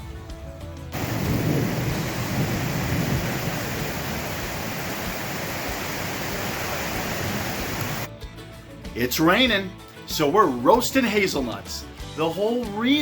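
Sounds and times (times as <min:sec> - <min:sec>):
low rumble of thunder: 0:01.0 - 0:05.7
heavy rain falling: 0:01.0 - 0:08.1.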